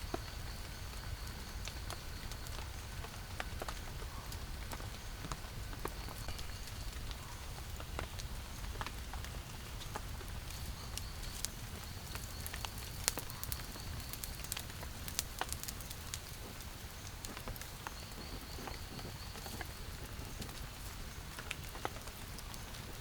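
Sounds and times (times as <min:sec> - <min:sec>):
steady rain noise: 0:00.0 - 0:23.0
raindrop clicks: 0:11.0 - 0:16.6.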